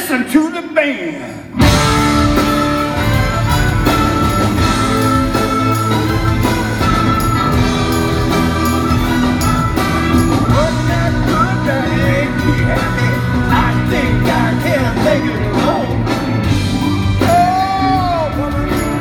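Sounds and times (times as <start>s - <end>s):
live rock band playing: 1.4s - 19.0s.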